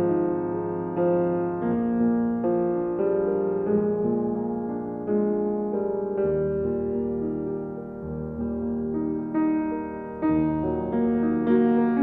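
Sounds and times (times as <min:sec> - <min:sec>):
slow piano chords: 0:00.0 - 0:12.0.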